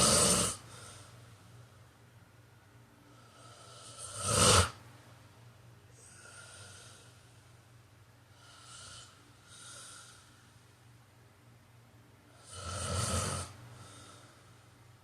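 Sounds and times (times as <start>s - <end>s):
man snoring: 0.0s - 0.6s, 3.3s - 4.8s, 8.4s - 10.2s, 12.4s - 14.1s
quiet breathy breaths: 0.0s - 15.0s.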